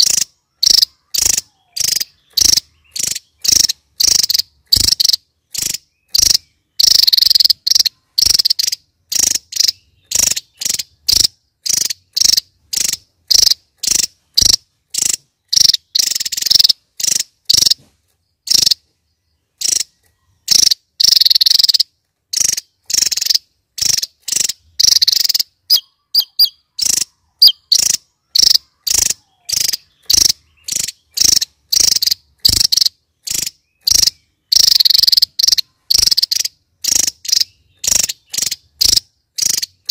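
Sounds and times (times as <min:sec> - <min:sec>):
bird singing high-pitched bursts: 0:00.0 - 0:39.9
thin whistled bird notes: 0:19.5 - 0:39.9.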